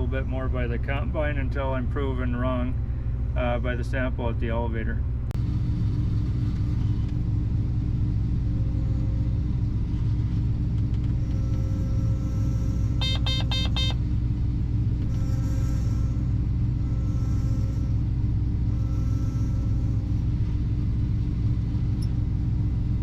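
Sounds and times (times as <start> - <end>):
farm machinery engine rumbling: 0.0 - 23.0
quick electronic beeps: 13.0 - 14.0.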